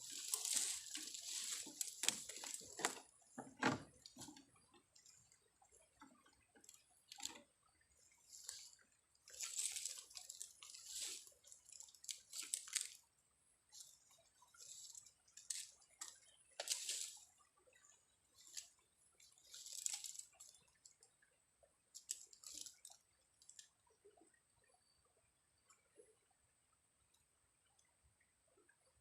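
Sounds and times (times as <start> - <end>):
water splashing and dripping: 0.0 - 3.2, 4.9 - 13.0, 17.9 - 21.1, 22.0 - 23.7.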